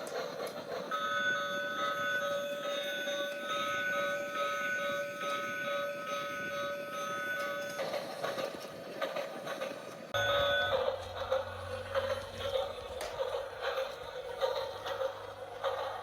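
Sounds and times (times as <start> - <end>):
toy train electronic chord: 0.5 - 8.5, 10.2 - 16.0
noisy clatter: 7.7 - 16.0.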